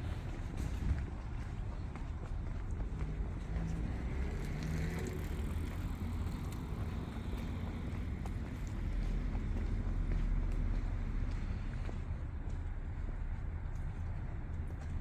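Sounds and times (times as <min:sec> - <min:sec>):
low rumble of road traffic: 0:00.0 - 0:15.0
passing engine: 0:02.6 - 0:12.4.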